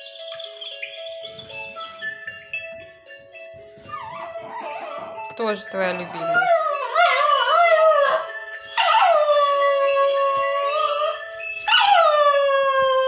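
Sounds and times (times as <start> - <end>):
phone alarm ringtone: 0.0 - 12.2
dog howling: 3.8 - 5.3, 6.0 - 13.0.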